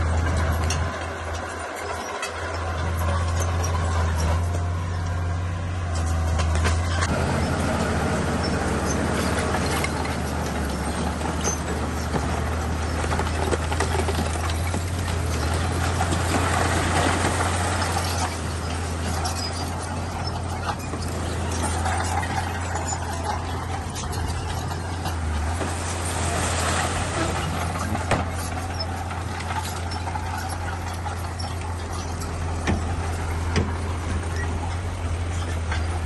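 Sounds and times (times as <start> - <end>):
bulldozer diesel engine: 0.0 - 36.0
stone and tracks rattling: 0.0 - 36.0.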